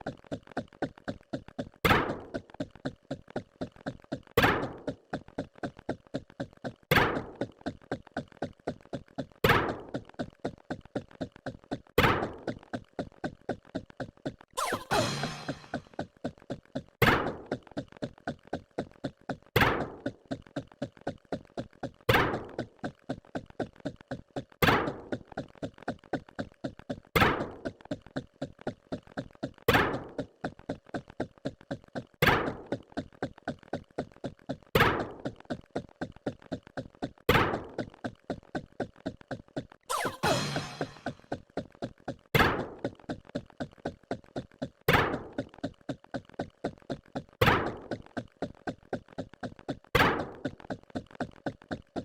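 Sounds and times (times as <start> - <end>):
thunk knock sound effects: 14.6 - 15.8, 39.9 - 41.2.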